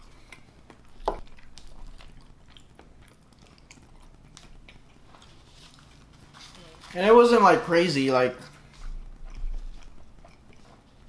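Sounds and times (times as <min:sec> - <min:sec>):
person chewing: 0:00.0 - 0:07.7, 0:08.3 - 0:11.0.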